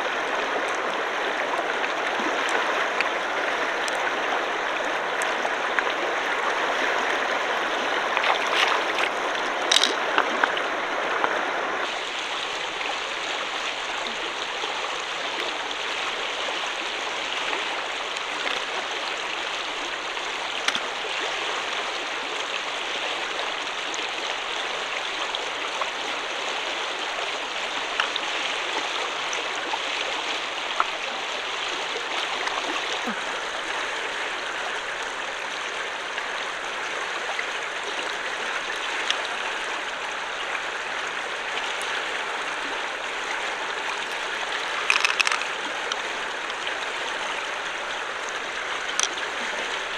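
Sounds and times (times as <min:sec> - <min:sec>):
shallow flowing water: 0:00.0 - 0:49.9
sharp clicks and taps: 0:44.9 - 0:45.5.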